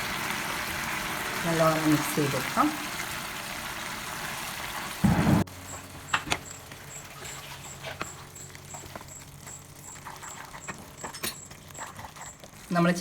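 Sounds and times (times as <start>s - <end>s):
loud thud: 5.0s - 5.5s
spoon scraping and clinking: 6.4s - 12.7s
spoon stirring curry in a pan: 6.4s - 12.8s.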